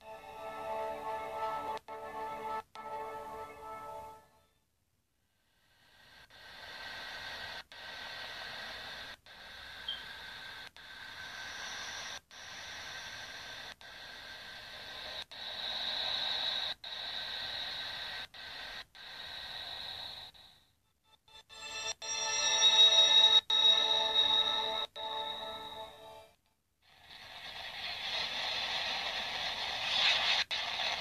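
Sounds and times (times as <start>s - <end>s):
faint steady whistling tones: 0.0s - 4.6s, 5.3s - 31.0s
static-like hiss: 5.7s - 20.6s, 26.9s - 31.0s.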